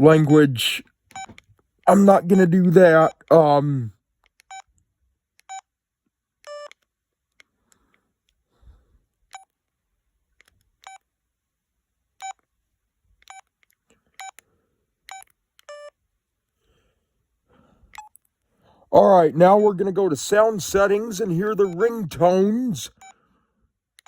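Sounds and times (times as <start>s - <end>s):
phone keypad beeps: 1.1s - 1.4s, 4.4s - 4.7s, 6.4s - 6.8s, 15.1s - 15.9s, 21.3s - 22.0s.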